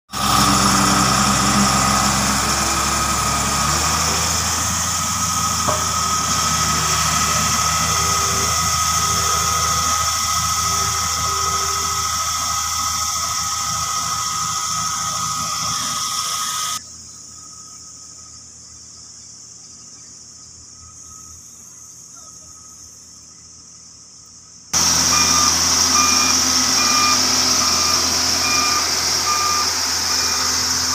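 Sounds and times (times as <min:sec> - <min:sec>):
construction machine engine running: 0:00.1 - 0:16.8, 0:24.7 - 0:30.9
high whine: 0:00.1 - 0:16.8, 0:24.8 - 0:30.9.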